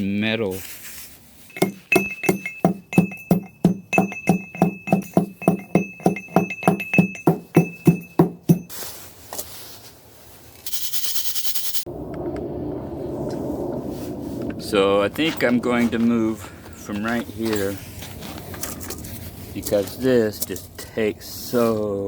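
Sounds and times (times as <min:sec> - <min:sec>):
pestle pounding in a mortar: 0:01.5 - 0:08.7.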